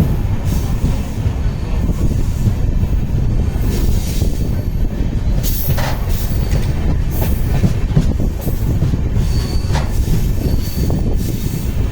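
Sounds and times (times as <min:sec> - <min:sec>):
train wheels rumbling on track: 0:00.0 - 0:11.9
high wheel squeals: 0:03.5 - 0:07.5, 0:08.5 - 0:11.9.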